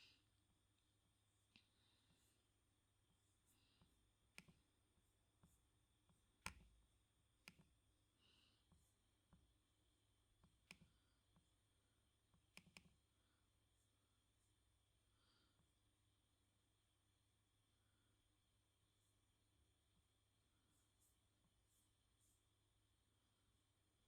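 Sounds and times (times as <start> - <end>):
keyboard keys tapped slowly: 3.7 - 4.6, 10.4 - 11.5, 12.3 - 13.0.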